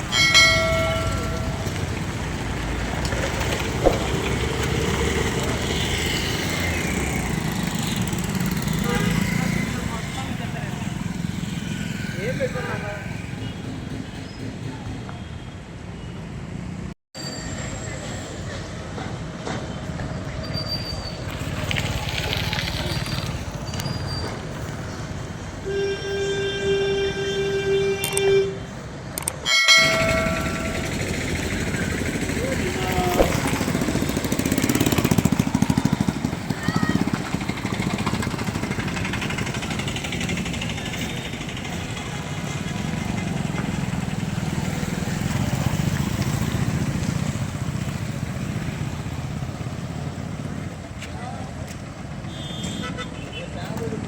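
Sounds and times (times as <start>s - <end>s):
vehicle horn: 8.7s - 9.8s, 25.6s - 28.8s, 52.3s - 53.4s
sharp click: 29.1s - 29.4s
engine low rumble: 29.8s - 51.9s.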